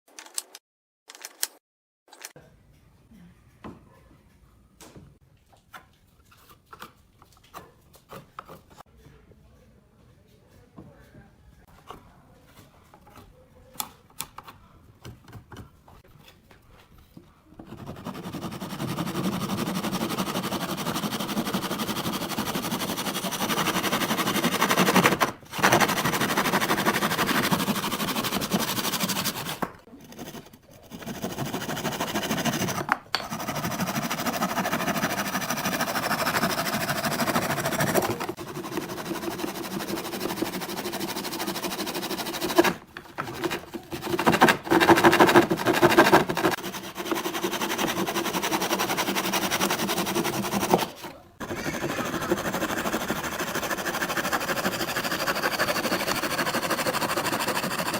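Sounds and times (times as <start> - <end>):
electric woodworking power tool: 18.2 - 29.7.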